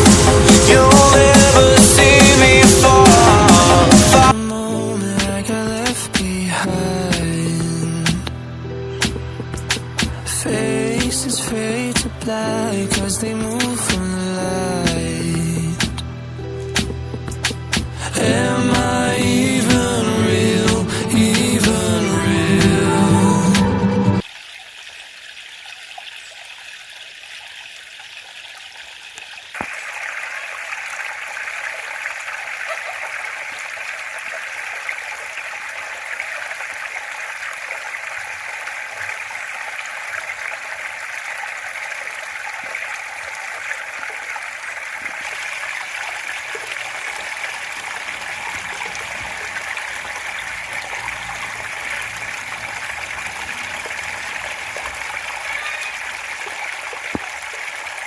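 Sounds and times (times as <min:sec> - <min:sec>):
steady rain falling: 0:29.2 - 0:58.0.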